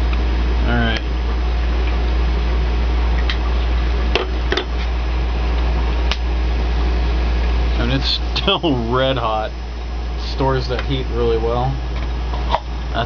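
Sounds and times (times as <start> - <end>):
machine hum and hiss: 0.0 - 13.0.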